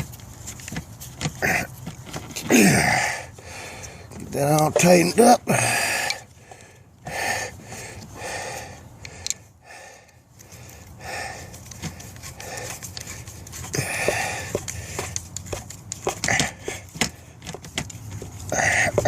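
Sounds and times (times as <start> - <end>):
person breathing hard: 2.5 - 4.1, 5.5 - 15.2, 16.2 - 17.4, 18.5 - 19.0.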